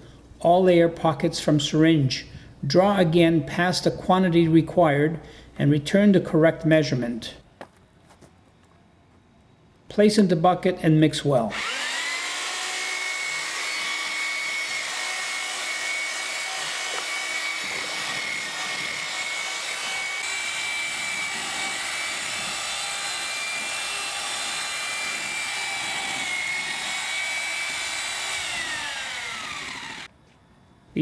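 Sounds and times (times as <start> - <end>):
electric drill motor whine: 11.5 - 30.1.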